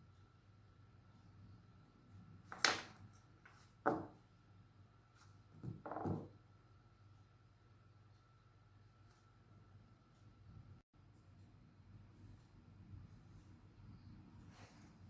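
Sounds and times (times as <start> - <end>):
low steady hum: 0.0 - 15.0
objects knocking: 2.5 - 3.1, 3.9 - 4.2, 5.6 - 6.3.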